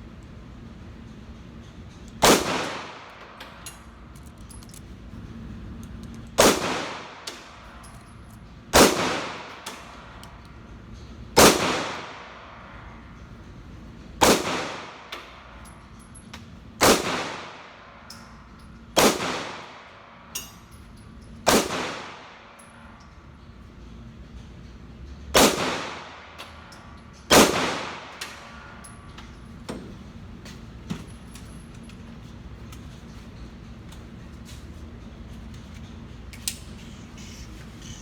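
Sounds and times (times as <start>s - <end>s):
echoing gunshots: 2.2s - 3.3s, 6.4s - 7.5s, 8.8s - 9.7s, 11.4s - 12.6s, 14.2s - 15.2s, 16.8s - 17.8s, 19.0s - 19.9s, 21.5s - 22.5s, 25.4s - 26.2s, 27.3s - 28.2s.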